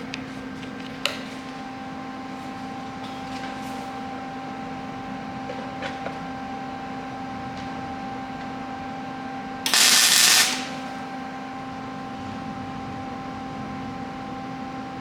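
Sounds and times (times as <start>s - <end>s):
steady hum: 0.0s - 15.0s
welding crackle: 9.7s - 11.0s.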